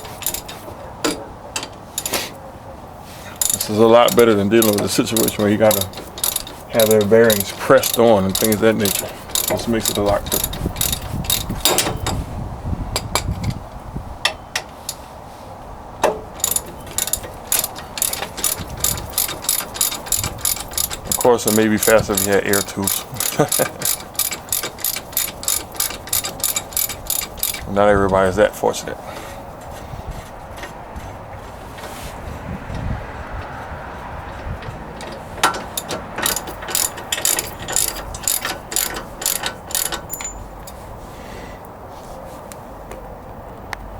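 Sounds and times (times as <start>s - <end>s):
ratchet clicking: 0.0s - 2.4s, 3.4s - 12.2s, 16.0s - 27.8s, 34.3s - 40.8s.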